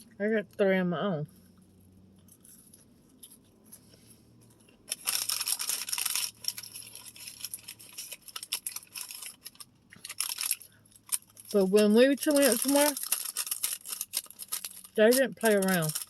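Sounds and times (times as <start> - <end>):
paper wrapper rustling and crinkling: 4.6 - 16.0.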